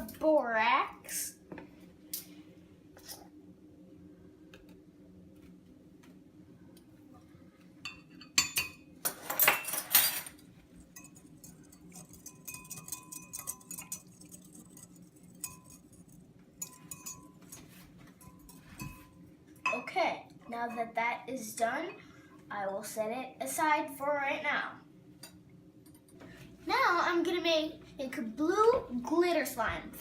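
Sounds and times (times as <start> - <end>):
spoon clinking in a cup: 10.9 - 19.9.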